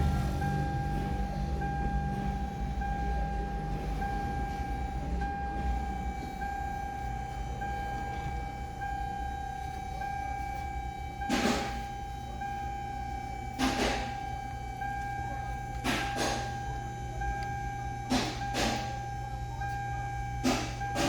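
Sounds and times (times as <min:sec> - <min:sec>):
low rumble: 0:00.0 - 0:05.5
pulsing electronic warning tone: 0:00.0 - 0:21.0.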